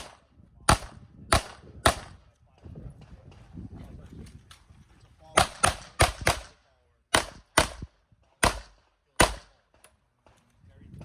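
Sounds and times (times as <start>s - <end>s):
pistol shots: 0.0s - 2.2s, 5.4s - 9.8s.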